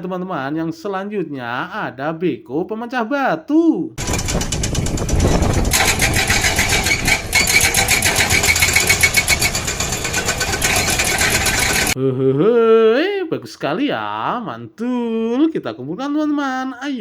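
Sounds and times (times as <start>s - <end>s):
engine running: 4.0s - 12.0s
hydraulic rock breaker hammering: 4.0s - 12.0s.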